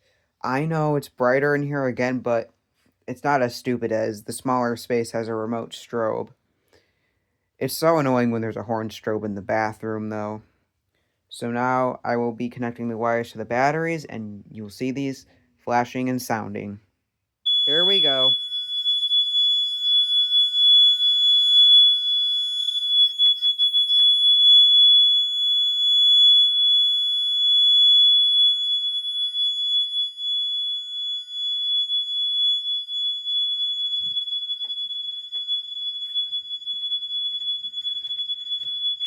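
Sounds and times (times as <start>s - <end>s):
fire alarm horn tone: 17.5s - 39.0s.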